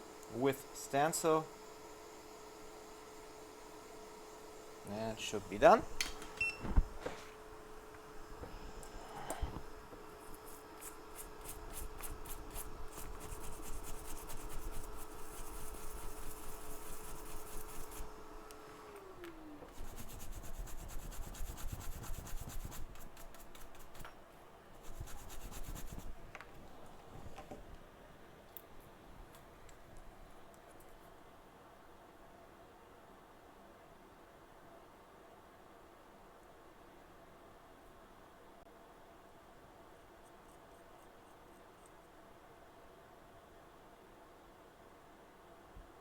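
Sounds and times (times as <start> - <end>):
hot-air station fan hum: 0.0 - 32.4.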